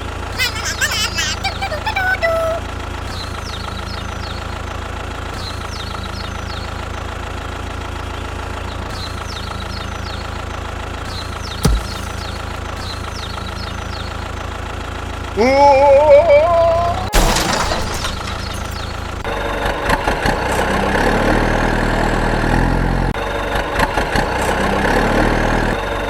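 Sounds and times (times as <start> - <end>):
high-pitched voice exclamation: 0.4 - 2.6
small engine idling: 2.6 - 16.1.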